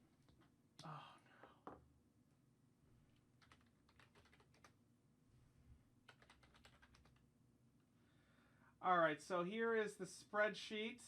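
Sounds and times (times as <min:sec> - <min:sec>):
faint keyboard typing: 0:03.1 - 0:04.8, 0:06.0 - 0:07.3.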